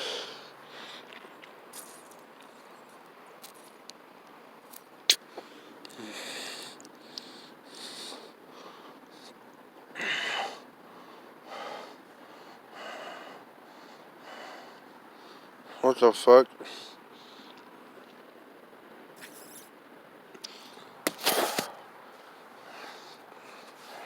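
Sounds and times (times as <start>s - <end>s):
person wheezy breathing: 0.0s - 1.0s.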